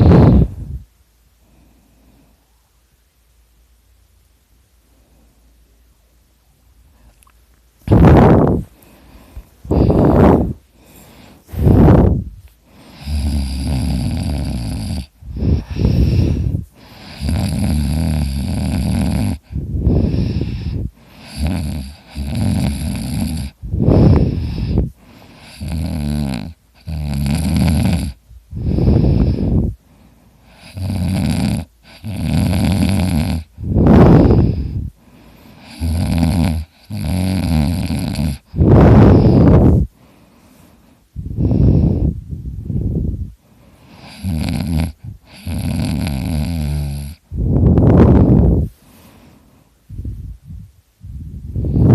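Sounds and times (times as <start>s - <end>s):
person snoring loudly: 0.0s - 0.6s, 9.7s - 10.6s, 12.8s - 29.8s, 30.6s - 34.9s, 35.6s - 39.9s, 44.0s - 48.6s.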